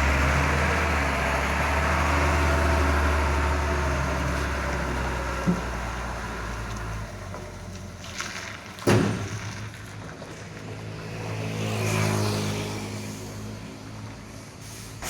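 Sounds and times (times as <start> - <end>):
diesel truck engine revving: 0.0 - 7.7.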